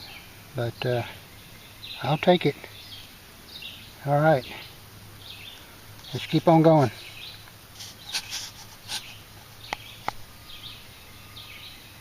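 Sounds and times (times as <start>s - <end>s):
small birds chirping: 0.0s - 12.0s
rustling swishes through dry brush: 7.7s - 9.7s.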